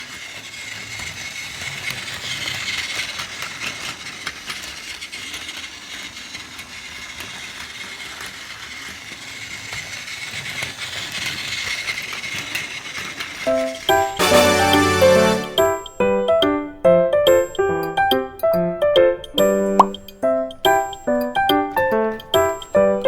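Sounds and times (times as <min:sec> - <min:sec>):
toy train motor whirring: 0:00.0 - 0:16.2
toy train clicking rattle: 0:00.0 - 0:23.0.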